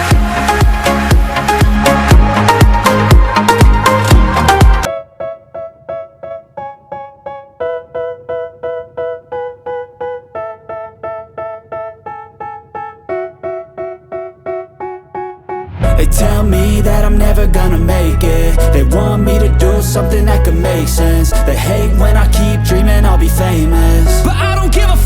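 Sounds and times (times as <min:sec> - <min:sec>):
loud dance music: 0:00.0 - 0:04.9, 0:15.8 - 0:25.0.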